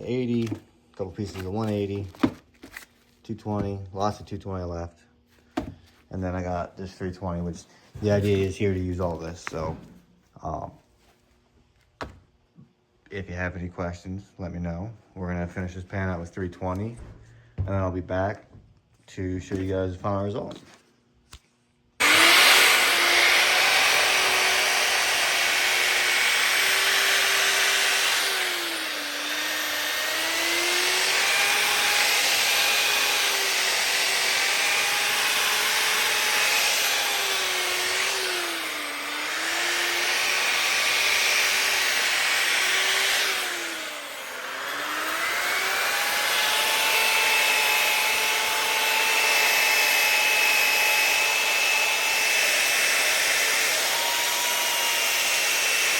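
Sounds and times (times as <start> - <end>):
grinder motor whine: 22.0 - 55.9.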